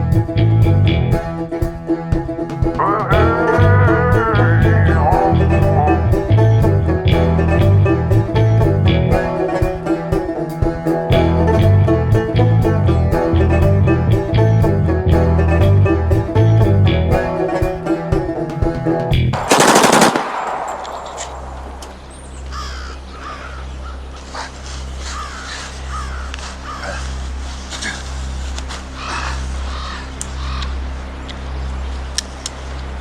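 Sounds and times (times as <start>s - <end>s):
bluegrass banjo music: 0.0s - 19.4s
steady low hum: 2.2s - 17.5s, 19.2s - 33.0s
submachine gun fire: 19.4s - 22.1s
birds calling: 19.6s - 33.0s.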